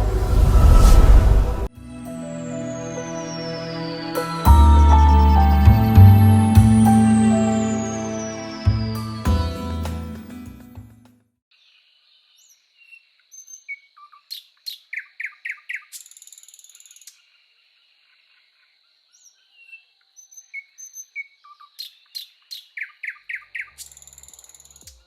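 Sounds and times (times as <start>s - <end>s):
low music notes: 0.0s - 11.0s
songbird singing: 2.1s - 9.5s, 19.1s - 24.8s.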